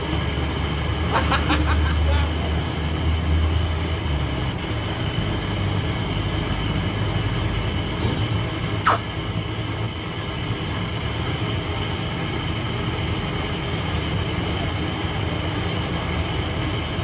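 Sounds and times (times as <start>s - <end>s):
low mechanical rumble: 0.0s - 17.0s
sharp click: 8.8s - 9.1s.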